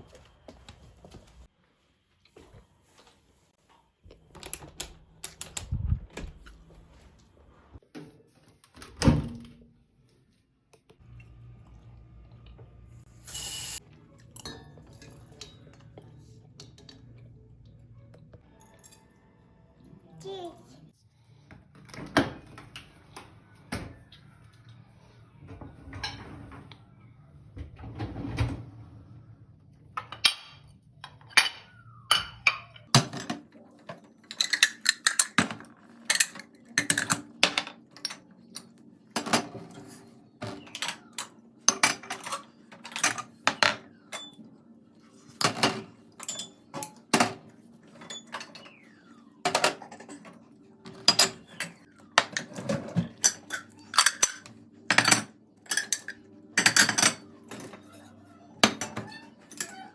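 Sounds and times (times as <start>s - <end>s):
appliance humming: 11.0s - 13.8s
dishes and cutlery clinking: 14.2s - 17.0s, 49.5s - 59.9s.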